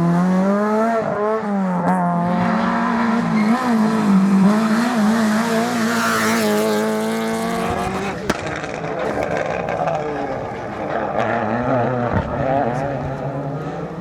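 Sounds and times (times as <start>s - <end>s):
car engine revving high: 0.0s - 14.0s
sharp crack: 7.6s - 11.2s.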